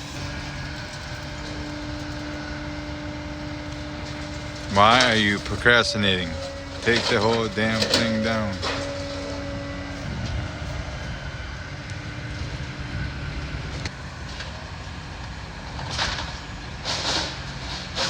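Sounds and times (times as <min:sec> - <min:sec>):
diesel excavator running: 0:00.0 - 0:18.0.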